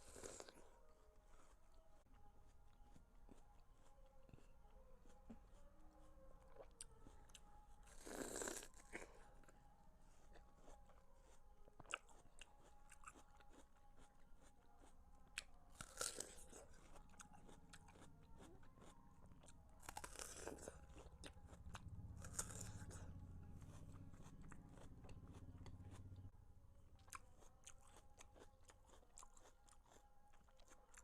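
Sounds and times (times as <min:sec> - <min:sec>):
crunching watermelon bites: 0:11.2 - 0:26.2
wet chewing clicks: 0:11.7 - 0:26.3.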